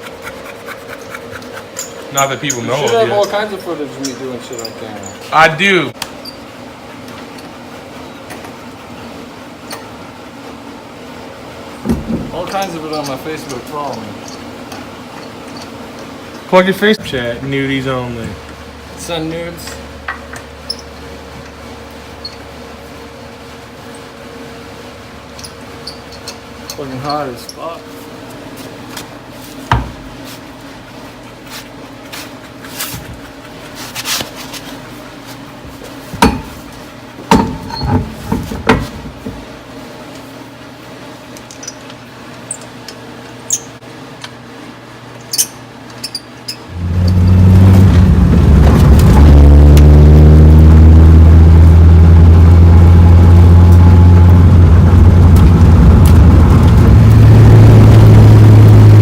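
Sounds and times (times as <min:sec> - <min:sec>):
car engine running loud: 0:46.7 - 0:59.0
low hum: 0:46.7 - 0:59.0.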